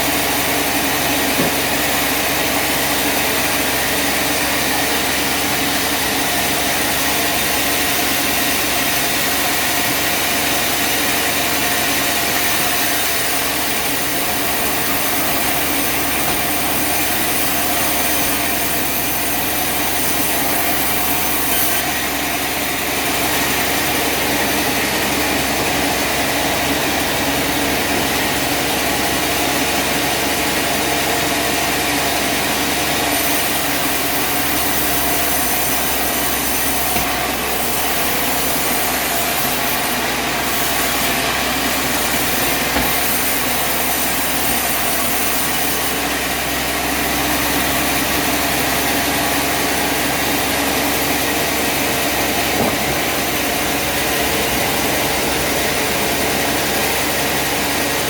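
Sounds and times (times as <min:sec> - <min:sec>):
sawmill machinery hum: 0:00.0 - 0:58.0.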